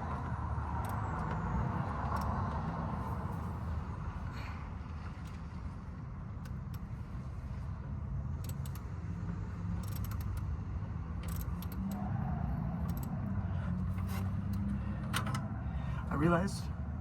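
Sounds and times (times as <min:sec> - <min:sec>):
socket ratchet clicking: 0:08.4 - 0:09.0, 0:09.7 - 0:12.0, 0:12.8 - 0:13.2.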